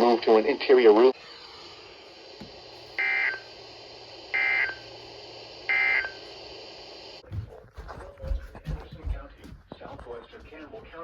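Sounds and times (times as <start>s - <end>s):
digital data bursts: 2.8s - 5.0s.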